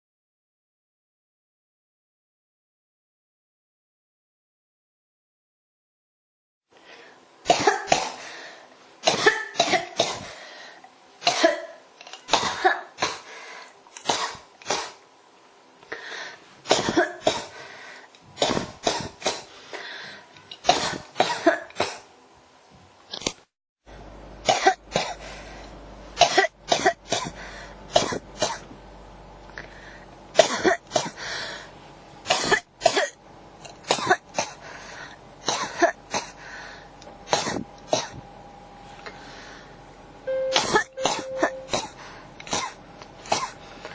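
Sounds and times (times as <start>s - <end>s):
person coughing: 7.5s - 8.2s, 9.1s - 10.3s, 11.2s - 13.3s, 16.7s - 17.5s, 26.2s - 28.7s, 30.4s - 31.2s, 32.3s - 33.2s, 33.8s - 34.6s, 35.4s - 36.4s, 37.3s - 38.2s, 40.3s - 43.6s
low steady hum: 23.9s - 43.9s.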